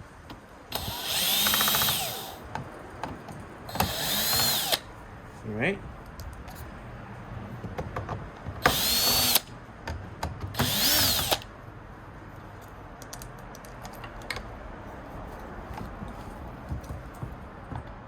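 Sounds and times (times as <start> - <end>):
cordless screwdriver motor whine: 0.7 - 2.4, 3.7 - 4.8, 8.7 - 9.5, 10.6 - 11.4
light clicks of parts and tool: 12.5 - 14.5.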